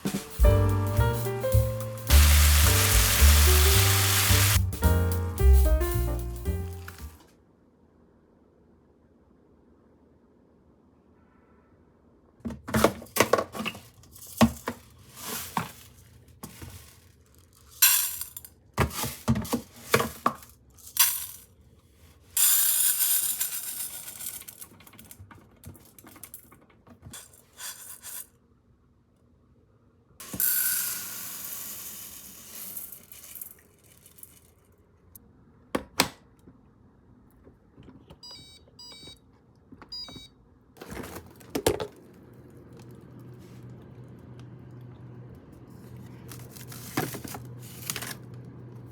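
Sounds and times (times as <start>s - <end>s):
objects knocking and clattering: 12.5s - 15.8s, 40.8s - 42.0s
electronic beeps: 38.2s - 39.2s, 39.9s - 40.3s.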